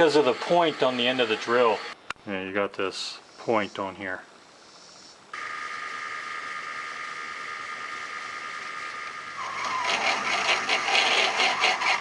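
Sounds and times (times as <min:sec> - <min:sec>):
drill bit cutting metal: 0:00.0 - 0:02.0
lathe running with whine: 0:00.0 - 0:02.0, 0:05.4 - 0:12.0.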